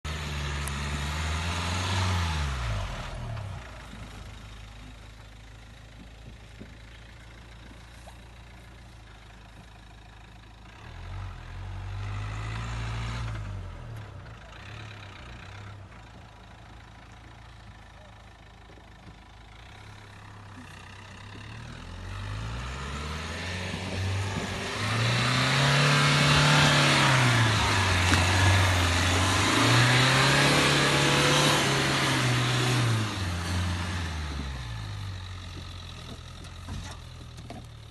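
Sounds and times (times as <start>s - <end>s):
car engine revving: 0.0s - 4.3s, 20.1s - 37.0s.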